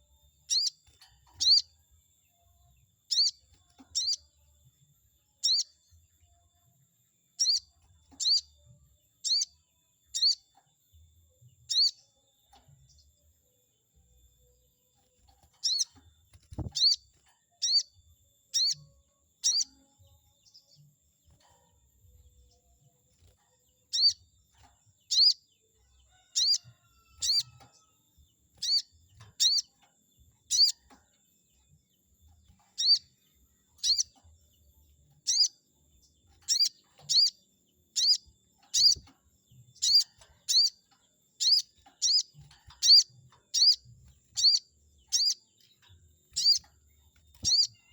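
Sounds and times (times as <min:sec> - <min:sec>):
sunbird sharp high calls: 0:36.5 - 0:37.4, 0:38.0 - 0:39.0, 0:41.4 - 0:43.8, 0:44.4 - 0:45.4, 0:46.4 - 0:46.7, 0:47.4 - 0:47.8.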